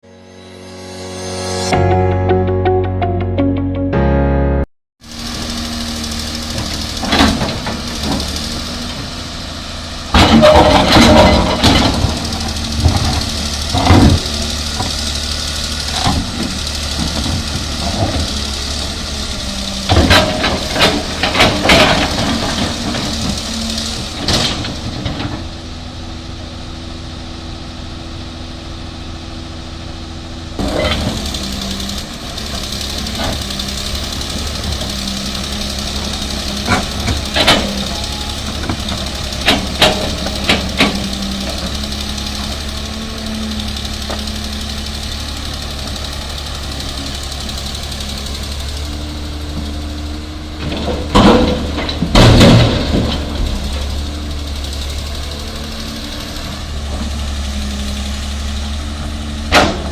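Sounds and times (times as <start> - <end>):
excavator diesel engine running: 5.0 - 59.9
loud metal knocks and clanks: 10.1 - 15.0, 19.6 - 25.5, 32.5 - 44.9, 50.5 - 55.2, 59.4 - 59.9.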